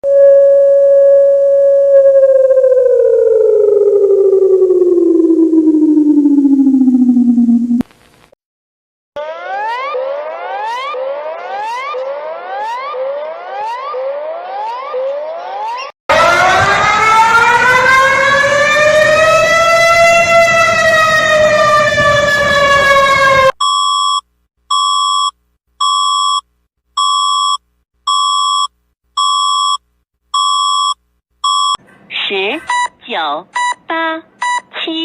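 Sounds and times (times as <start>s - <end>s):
long siren wail: 0.0s - 7.8s, 9.2s - 23.6s
rising siren whoops: 0.0s - 7.8s, 9.2s - 23.6s
high electronic alarm beeps: 30.4s - 31.8s.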